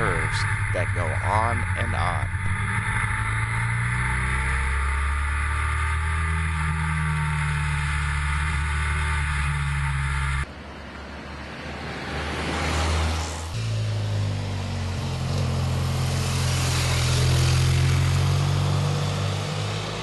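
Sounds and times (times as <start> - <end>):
motorcycle engine running: 0.0 - 10.5
rushing noise with low hum: 0.0 - 10.5.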